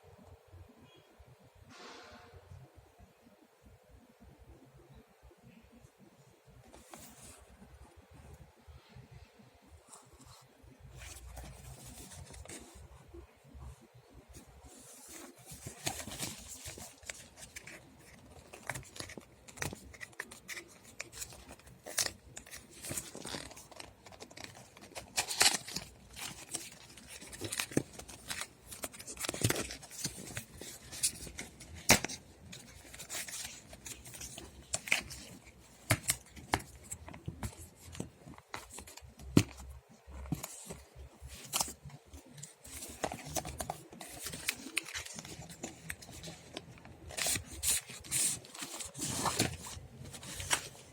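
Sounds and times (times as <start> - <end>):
packaging rustling and scraping: 9.9 - 13.2, 14.3 - 50.9.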